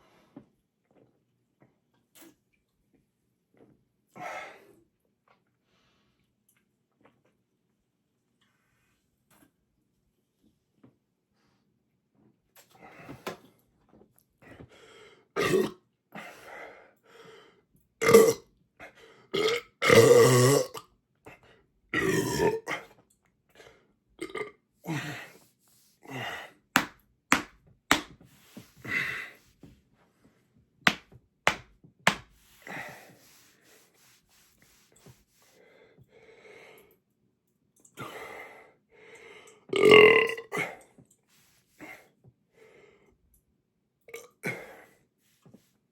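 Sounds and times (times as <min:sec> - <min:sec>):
man belching: 0:15.4 - 0:15.7, 0:18.0 - 0:18.4, 0:19.4 - 0:20.8, 0:22.0 - 0:22.9, 0:24.2 - 0:24.5, 0:39.8 - 0:40.7.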